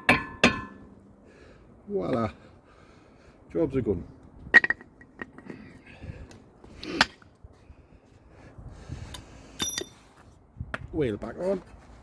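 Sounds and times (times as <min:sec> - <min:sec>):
metal tools knocking and clinking: 0:00.0 - 0:00.8, 0:09.6 - 0:10.0.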